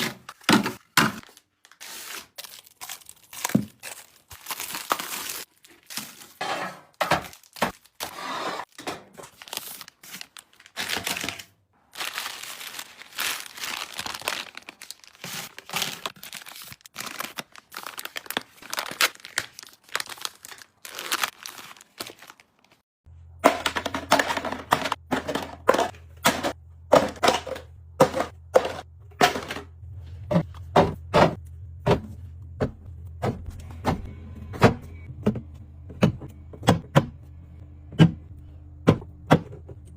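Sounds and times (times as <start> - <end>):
packaging crinkling and tearing: 1.2 - 6.4, 9.2 - 22.8.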